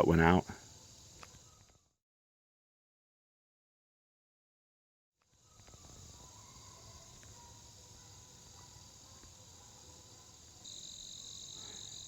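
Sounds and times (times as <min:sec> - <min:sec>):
insects chirping: 0:00.0 - 0:02.0, 0:05.3 - 0:12.0.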